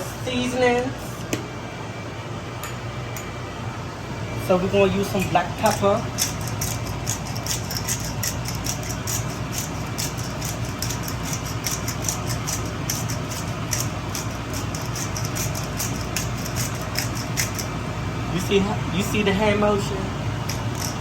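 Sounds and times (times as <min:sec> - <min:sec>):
steady low hum: 0:00.0 - 0:21.0
pepper grinder ticking: 0:05.6 - 0:17.8, 0:20.4 - 0:21.0.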